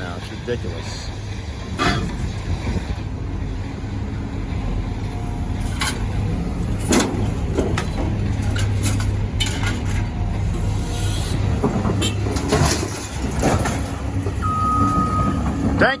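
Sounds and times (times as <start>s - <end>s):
engine running: 0.0s - 16.0s
scrap metal clanking: 6.8s - 15.8s.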